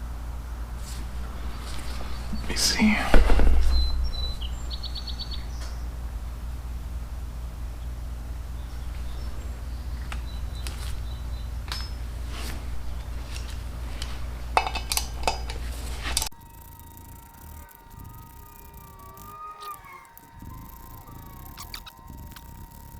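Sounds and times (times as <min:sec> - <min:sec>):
steady low hum: 0:16.3 - 0:22.9.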